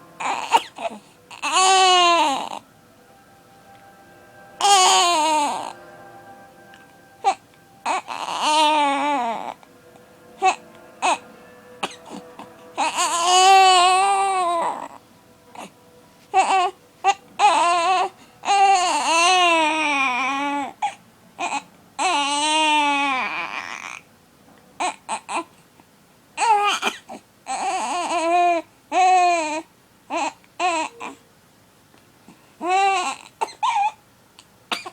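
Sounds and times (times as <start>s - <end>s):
baby crying: 0.1s - 2.7s, 4.6s - 5.8s, 7.2s - 9.6s, 10.4s - 11.2s, 11.8s - 24.0s, 26.4s - 31.2s, 32.6s - 34.0s.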